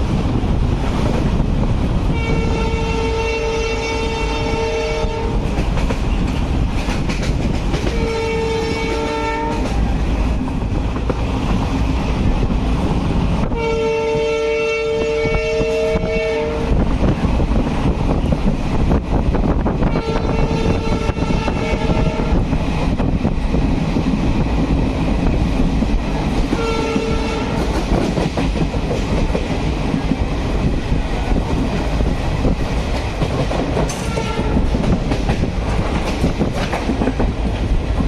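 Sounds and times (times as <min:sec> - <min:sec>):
train rumbling and rattling: 0:00.0 - 0:38.0
train horn blasts: 0:02.1 - 0:05.4, 0:07.9 - 0:09.8, 0:13.4 - 0:16.8, 0:19.8 - 0:22.4, 0:26.5 - 0:27.7, 0:34.0 - 0:34.7.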